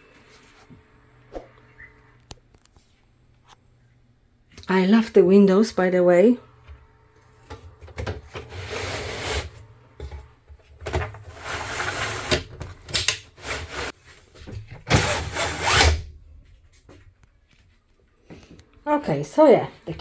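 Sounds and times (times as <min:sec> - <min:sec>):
rough scraping: 0:08.4 - 0:09.6.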